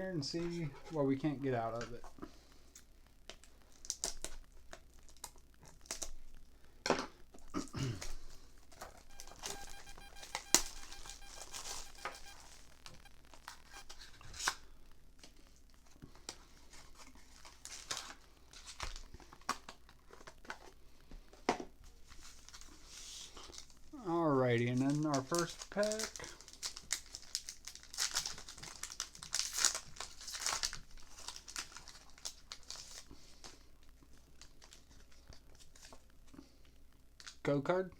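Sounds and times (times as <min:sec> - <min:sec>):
plastic wrap crinkling and tearing: 0:02.6 - 0:06.6, 0:10.2 - 0:20.8, 0:21.9 - 0:36.3, 0:37.2 - 0:37.4.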